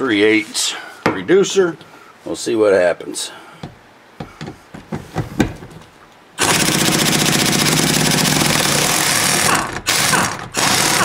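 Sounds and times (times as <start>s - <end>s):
impact wrench hammering: 6.4s - 11.0s.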